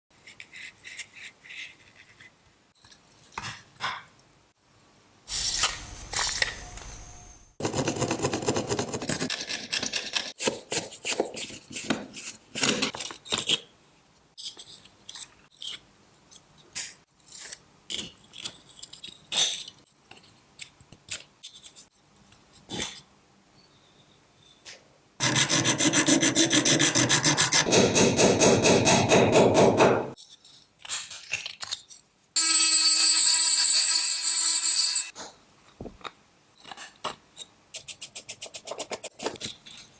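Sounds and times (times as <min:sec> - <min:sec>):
sanding or filing strokes: 0:25.2 - 0:27.7.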